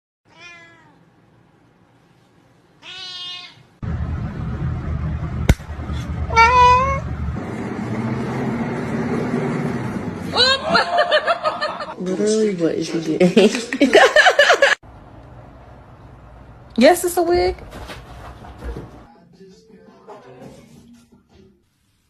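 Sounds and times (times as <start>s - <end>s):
cat meowing: 0.3s - 1.0s, 2.8s - 3.7s, 6.3s - 7.0s.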